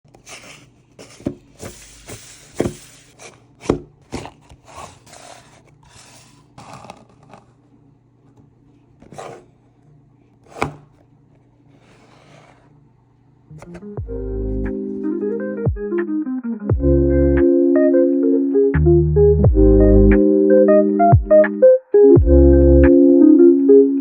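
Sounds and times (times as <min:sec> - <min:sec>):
packaging rustling and scraping: 0:00.1 - 0:07.6, 0:09.0 - 0:09.6.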